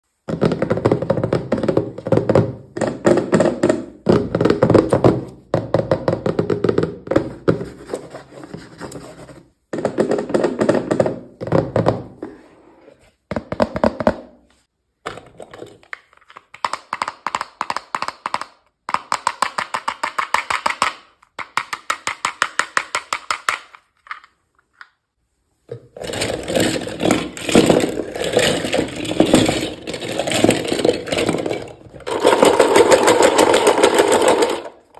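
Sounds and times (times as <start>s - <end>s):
small plastic pieces clicking: 15.2s - 25.0s, 26.0s - 34.8s.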